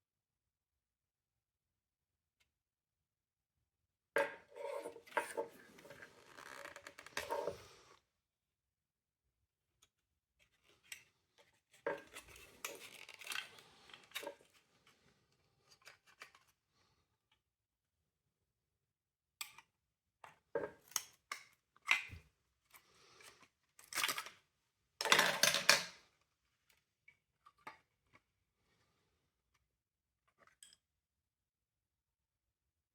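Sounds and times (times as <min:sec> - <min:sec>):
plastic parts scraping and rattling: 0:10.4 - 0:15.0, 0:21.9 - 0:24.4, 0:25.0 - 0:26.0.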